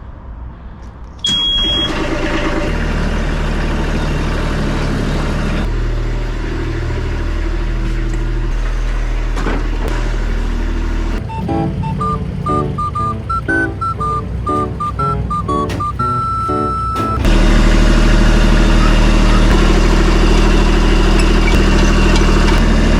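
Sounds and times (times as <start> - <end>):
vehicle engine starting and idling: 1.3 - 22.9
music: 8.2 - 22.9.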